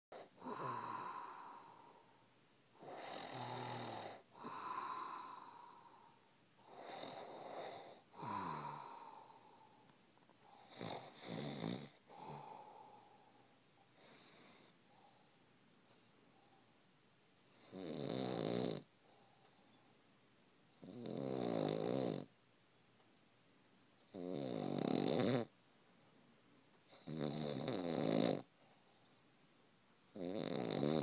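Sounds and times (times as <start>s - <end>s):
person snoring: 0.1s - 2.2s, 2.8s - 15.3s, 17.6s - 18.9s, 20.8s - 22.3s, 24.1s - 25.5s, 26.9s - 28.5s, 30.1s - 31.0s.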